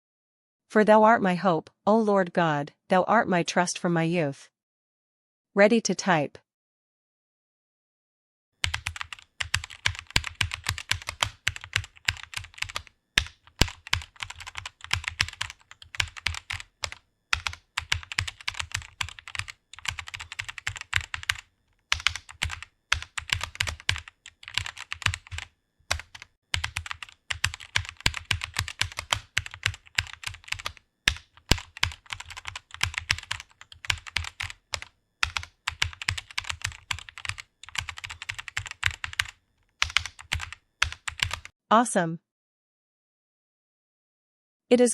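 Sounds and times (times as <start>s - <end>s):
keyboard typing: 8.6s - 41.5s.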